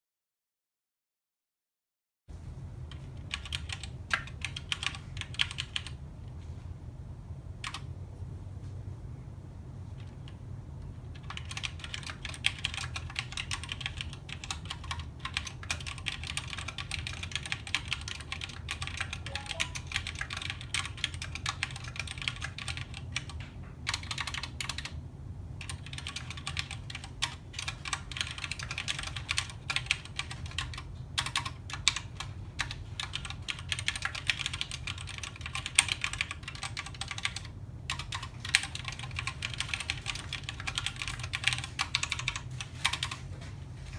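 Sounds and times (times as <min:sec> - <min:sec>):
mechanical keyboard typing: 0:02.9 - 0:06.0, 0:07.6 - 0:07.9, 0:11.1 - 0:25.0, 0:25.6 - 0:43.2.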